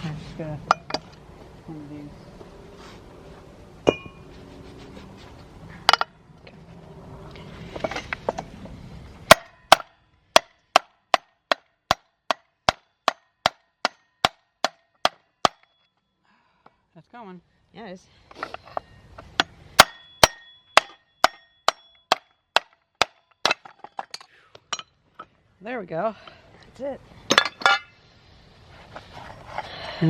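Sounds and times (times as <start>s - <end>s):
tool knocks and clinks: 3.9s - 4.2s, 27.3s - 27.9s.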